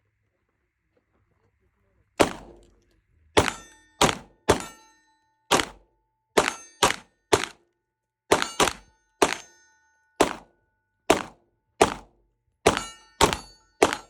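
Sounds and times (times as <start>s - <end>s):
gunshots: 2.2s - 2.7s, 3.4s - 4.8s, 5.5s - 5.8s, 6.4s - 7.6s, 8.3s - 9.6s, 10.2s - 10.5s, 11.1s - 12.1s, 12.7s - 14.0s
ringing tones: 3.4s - 5.2s, 8.3s - 10.5s, 12.7s - 14.0s.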